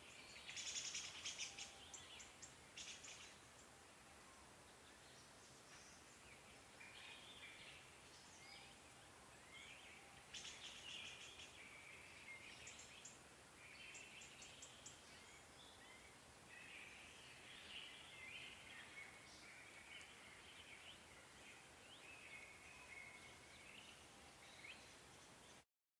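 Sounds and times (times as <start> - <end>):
songbirds singing: 0.0 - 25.6
steady hiss: 0.0 - 25.6.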